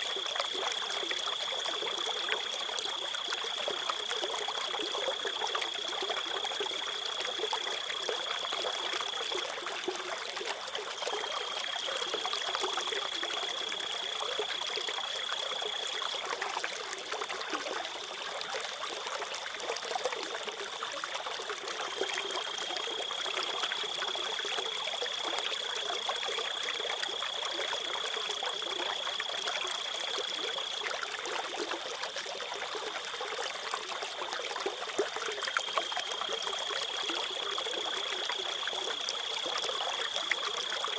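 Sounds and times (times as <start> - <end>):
trickling stream: 0.0 - 40.9
crickets trilling: 11.0 - 16.4, 21.8 - 31.0, 35.3 - 40.9.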